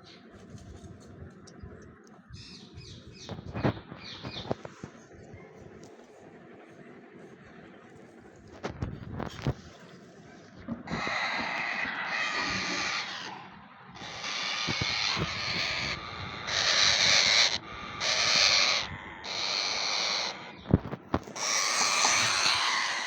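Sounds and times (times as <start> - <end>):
parrot raspy hissing calls: 10.9 - 20.6, 21.4 - 23.0.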